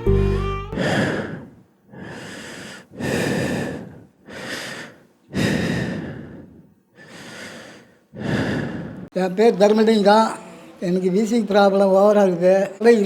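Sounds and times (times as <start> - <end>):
man breathing heavily: 0.8 - 9.1.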